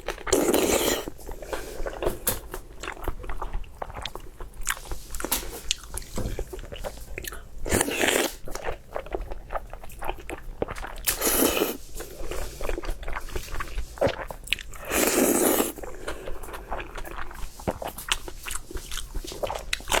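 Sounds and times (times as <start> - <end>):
person chewing with crunching bites: 0.0 - 20.0.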